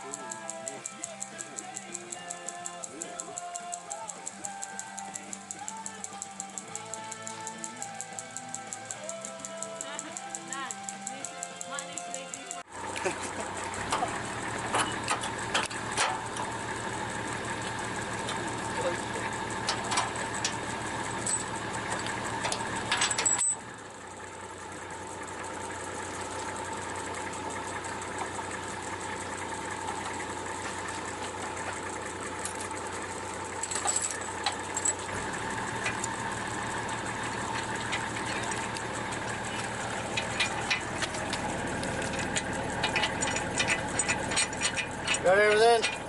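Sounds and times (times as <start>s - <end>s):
light clicks: 0.0s - 13.0s
vehicle engine idling: 0.0s - 46.0s.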